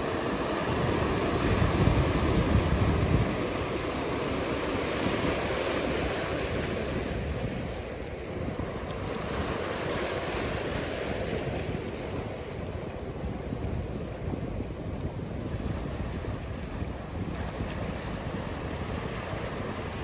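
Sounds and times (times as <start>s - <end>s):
ocean surf washing: 0.0s - 20.0s
wind: 0.0s - 20.0s.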